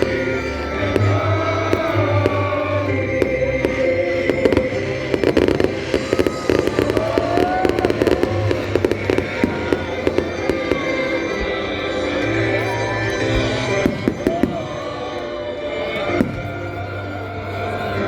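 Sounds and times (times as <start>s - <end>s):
fireworks popping and crackling: 0.0s - 11.8s, 13.4s - 15.1s
music with long held notes: 0.0s - 18.0s.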